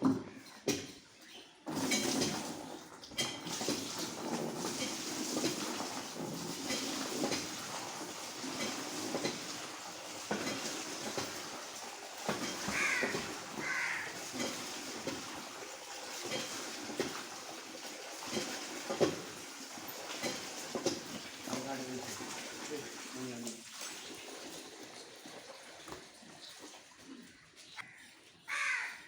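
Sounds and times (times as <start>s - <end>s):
crow cawing: 12.7s - 14.2s, 27.8s - 29.0s.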